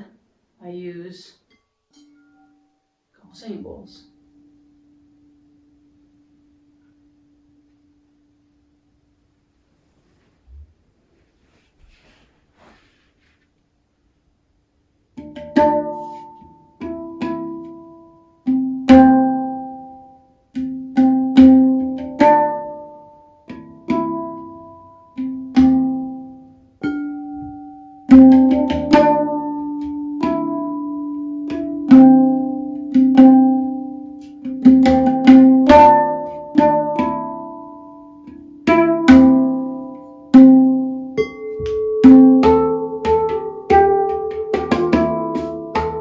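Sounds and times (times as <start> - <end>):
handpan melody: 15.2 - 46.0.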